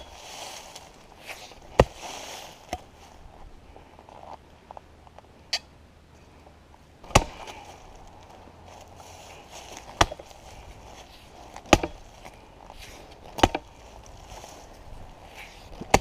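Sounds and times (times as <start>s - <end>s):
axe striking: 1.7s - 2.0s, 7.0s - 7.6s, 9.8s - 10.4s, 11.6s - 12.1s, 13.2s - 13.8s, 15.7s - 16.0s.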